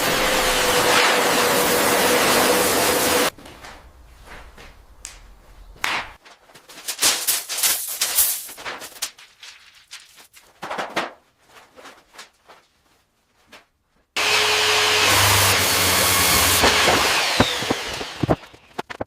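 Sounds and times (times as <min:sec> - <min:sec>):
power tool running: 0:00.0 - 0:03.3, 0:14.2 - 0:18.7
knocks and scrapes on building material: 0:16.6 - 0:19.0.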